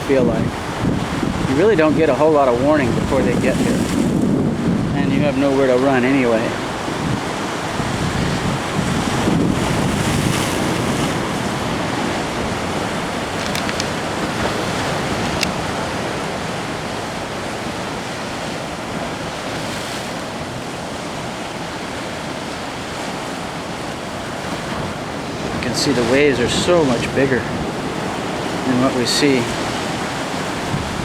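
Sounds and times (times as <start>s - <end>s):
ocean surf breaking: 0.0s - 31.0s
wind buffeting microphone: 0.0s - 31.0s.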